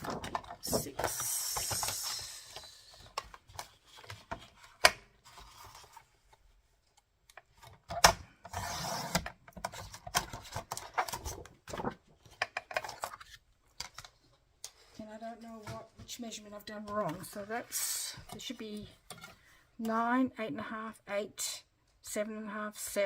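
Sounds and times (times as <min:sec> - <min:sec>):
paper and card rustling: 0:00.0 - 0:06.6, 0:08.5 - 0:19.5.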